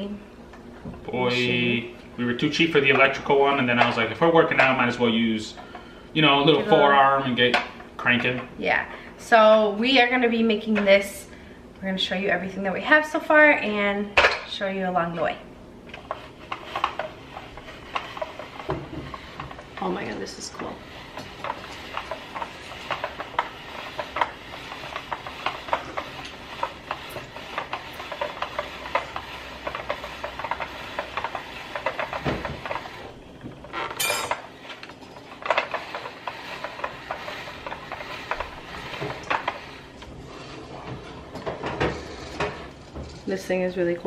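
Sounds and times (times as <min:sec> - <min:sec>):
spiralizer clicking and rattling: 0:16.0 - 0:33.1.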